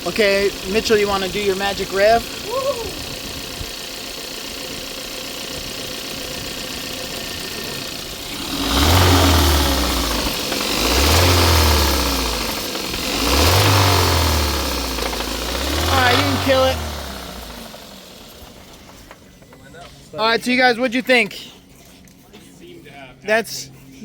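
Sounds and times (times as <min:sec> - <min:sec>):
engine knocking: 0:00.0 - 0:19.4
car engine idling and revving: 0:00.0 - 0:20.1.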